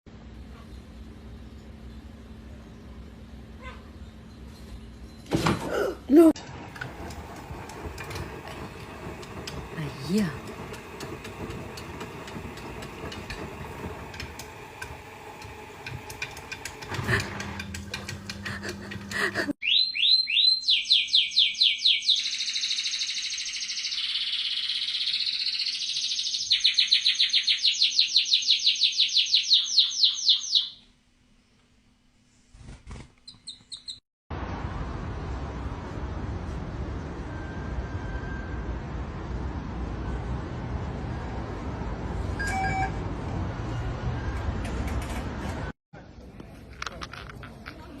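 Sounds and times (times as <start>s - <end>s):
bird chirping trills: 19.6s - 30.8s, 33.2s - 34.0s.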